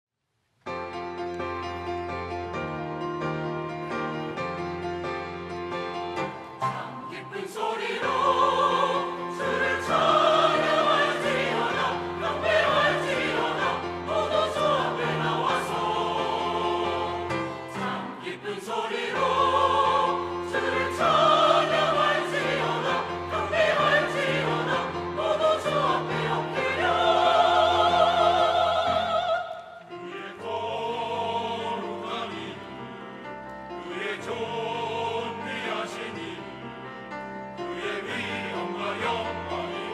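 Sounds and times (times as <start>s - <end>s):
choir singing: 3.3s - 39.9s.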